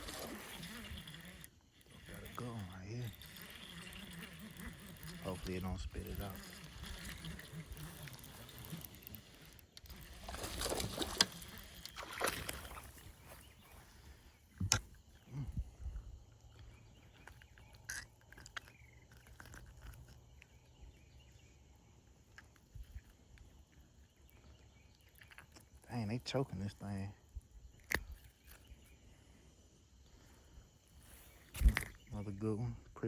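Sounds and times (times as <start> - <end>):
fish handling noise: 0.0 - 20.3
water splashing: 4.5 - 13.4.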